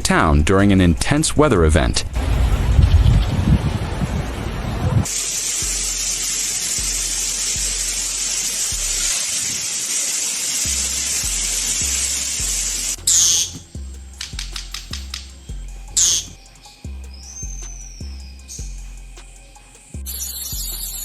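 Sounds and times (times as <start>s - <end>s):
loud low rushing noise: 1.4s - 9.2s, 10.7s - 19.2s
steady hiss: 2.2s - 21.0s
music with pulsing bass: 4.6s - 9.2s, 10.6s - 21.0s.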